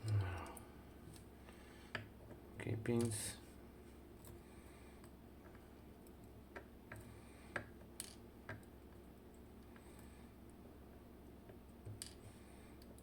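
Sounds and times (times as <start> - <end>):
metallic clicks of small pins: 2.8 - 3.4, 11.5 - 13.0.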